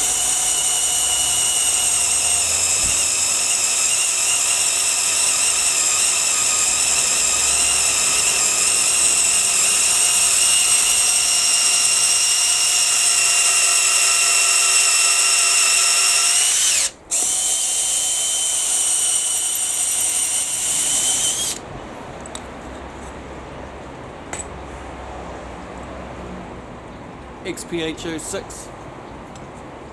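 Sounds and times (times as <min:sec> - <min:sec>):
drill motor whine: 0:00.0 - 0:21.6.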